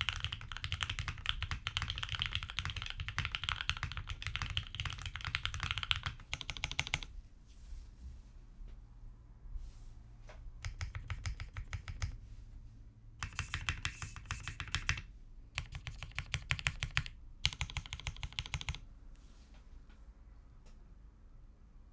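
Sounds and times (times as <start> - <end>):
mechanical keyboard typing: 0.0 - 7.1, 10.6 - 12.2, 13.2 - 18.8.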